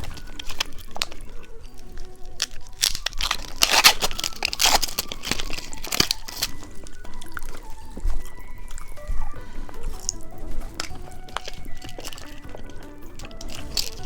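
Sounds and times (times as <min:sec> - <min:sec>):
candy packaging crinkling: 0:00.0 - 0:14.0.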